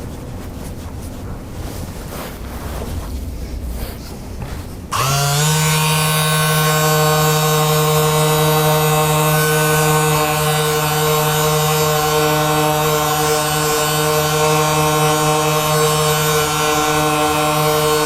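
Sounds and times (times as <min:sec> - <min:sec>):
small electric motor humming: 0:04.9 - 0:18.0.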